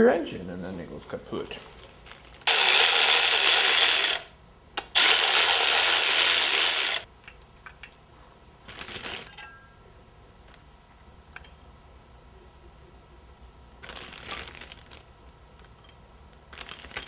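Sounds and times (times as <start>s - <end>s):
air tool bursts: 2.5s - 7.1s.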